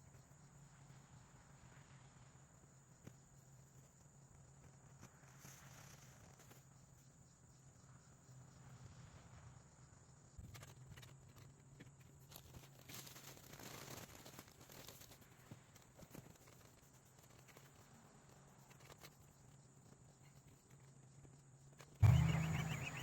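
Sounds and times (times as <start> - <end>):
low steady hum: 22.0 - 23.0.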